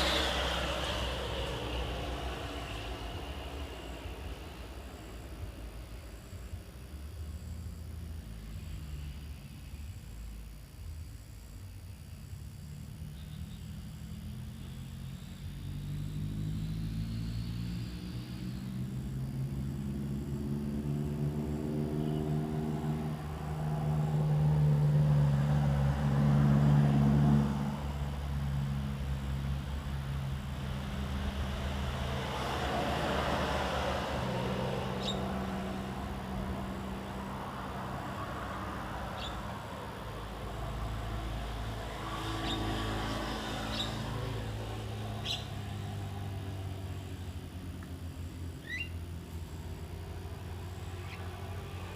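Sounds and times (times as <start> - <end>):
vehicle engines passing: 0.0 - 10.5, 12.6 - 51.9
high bird chirps: 35.0 - 35.3, 39.2 - 39.4, 45.2 - 45.6, 48.6 - 49.0.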